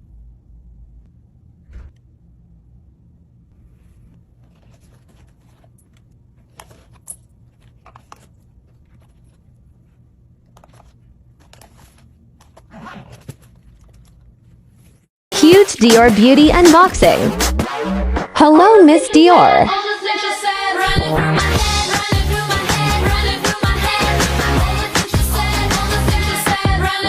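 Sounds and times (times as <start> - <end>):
low steady hum: 0.0 - 12.6
packaging rustling and clicks: 4.4 - 9.5, 10.4 - 15.0.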